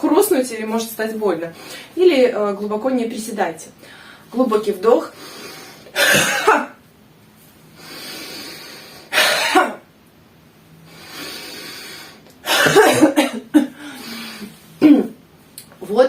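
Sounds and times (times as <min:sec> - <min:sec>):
woman breathing in deeply: 0:03.8 - 0:04.3, 0:07.8 - 0:09.1, 0:10.8 - 0:12.2, 0:13.8 - 0:14.6
woman coughing: 0:06.0 - 0:06.8, 0:09.1 - 0:09.9, 0:12.4 - 0:13.8, 0:14.8 - 0:15.2.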